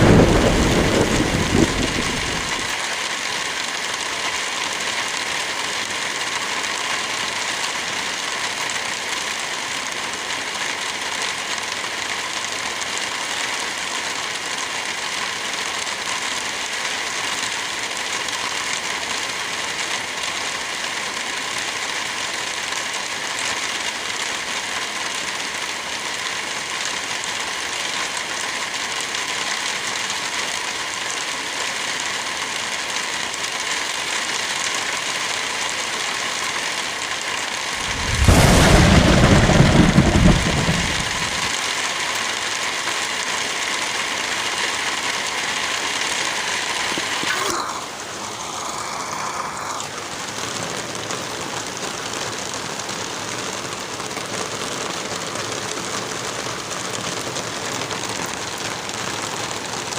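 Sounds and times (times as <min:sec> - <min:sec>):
wind rushing through trees: 0:00.0 - 0:02.8, 0:37.8 - 0:41.5
light rain: 0:00.0 - 0:59.9.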